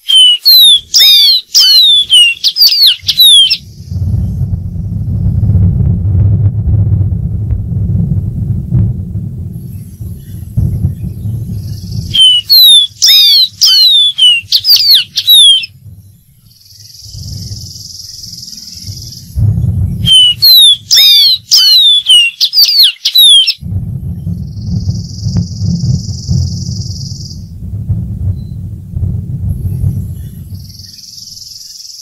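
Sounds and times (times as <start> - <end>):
bird song whistled notes: 0.0 - 4.8, 9.6 - 27.5, 28.3 - 28.6, 29.5 - 32.0
steady high hiss: 0.0 - 6.1, 8.2 - 22.5, 23.6 - 32.0
low rumble: 3.0 - 21.7, 23.6 - 31.7.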